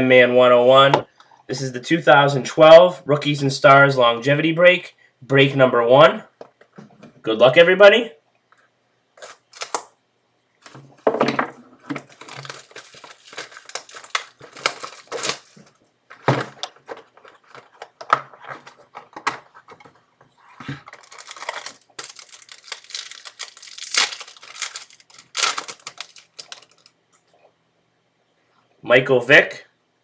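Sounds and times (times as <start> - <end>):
plastic wrapping crinkling and tearing: 9.2 - 9.9, 11.9 - 19.9, 20.5 - 27.0.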